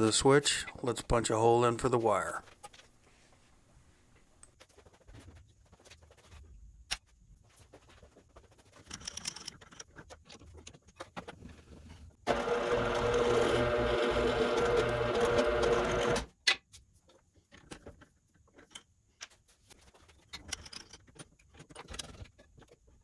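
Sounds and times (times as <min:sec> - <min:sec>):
drill press motor hum: 0:12.3 - 0:16.3.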